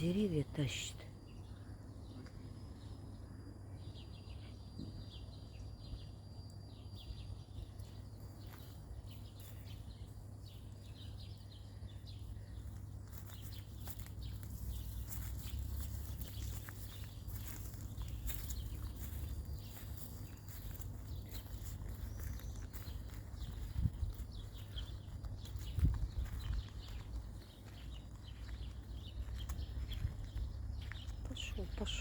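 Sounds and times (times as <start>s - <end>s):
footsteps rustling through grass: 7.9s - 11.2s, 12.1s - 32.0s.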